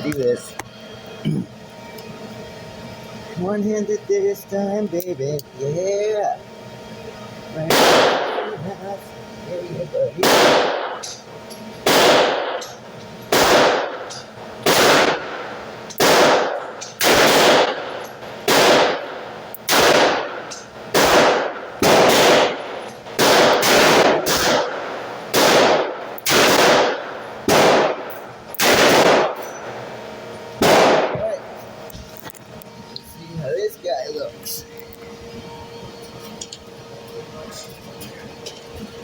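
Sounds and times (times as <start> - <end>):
revolver gunshots echoing: 7.6 - 8.5, 10.2 - 11.1, 11.8 - 12.7, 13.3 - 29.5, 30.6 - 31.2.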